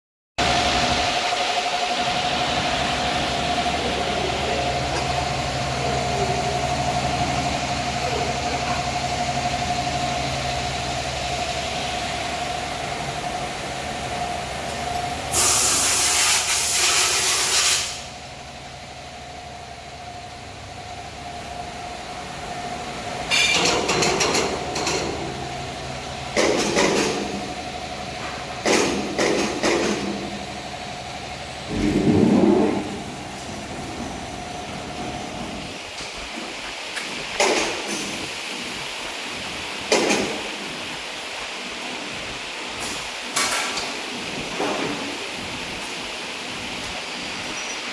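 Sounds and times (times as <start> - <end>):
loud hissing bursts: 15.3 - 18.1.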